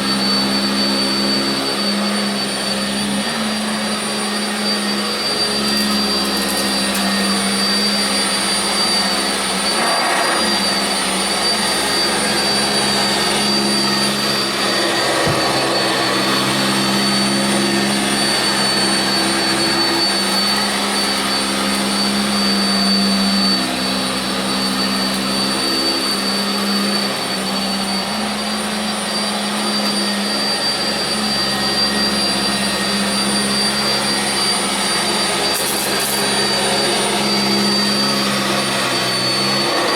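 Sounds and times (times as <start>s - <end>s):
vacuum cleaner on carpet: 0.0s - 39.9s.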